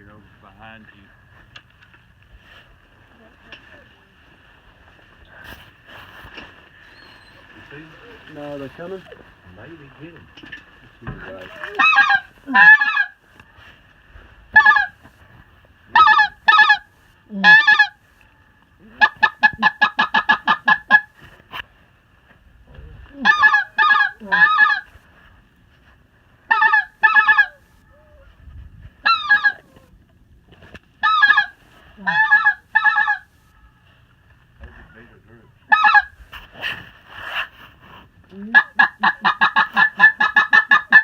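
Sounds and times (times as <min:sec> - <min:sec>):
geese honking: 0:11.3 - 0:13.2, 0:14.5 - 0:15.1, 0:15.9 - 0:18.0, 0:18.8 - 0:21.2, 0:23.2 - 0:24.9, 0:26.5 - 0:27.6, 0:29.0 - 0:29.8, 0:31.0 - 0:33.3, 0:35.7 - 0:36.2, 0:38.4 - 0:41.0.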